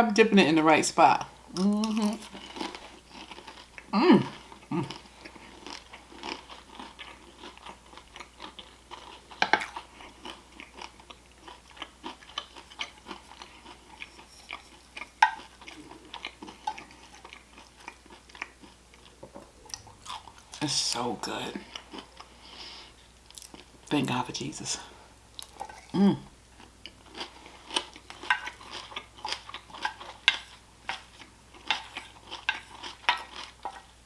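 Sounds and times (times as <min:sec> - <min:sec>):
crunchy chewing and biting: 0:01.6 - 0:20.6, 0:26.6 - 0:34.0.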